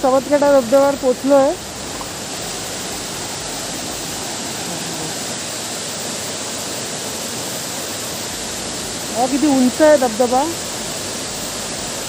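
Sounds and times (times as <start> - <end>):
waterfall crashing: 0.0 - 12.0.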